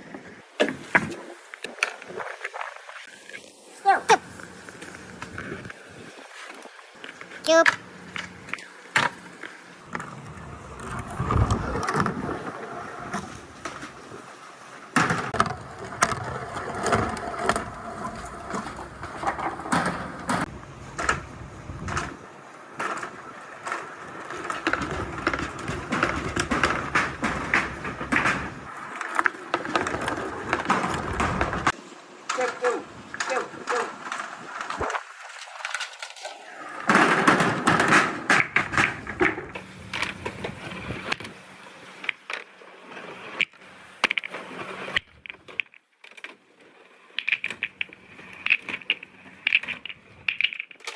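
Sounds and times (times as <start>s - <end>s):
balls rolling on wooden track: 22.8s - 31.8s, 34.1s - 50.9s
balls clicking together: 43.3s - 46.3s, 47.1s - 50.9s.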